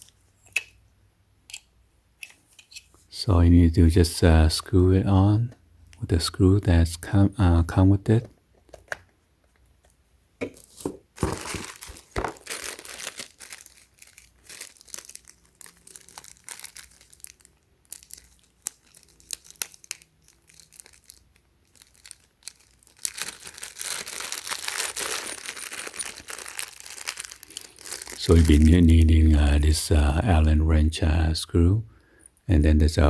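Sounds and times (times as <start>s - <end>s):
plastic packaging crinkling: 10.6s - 29.8s.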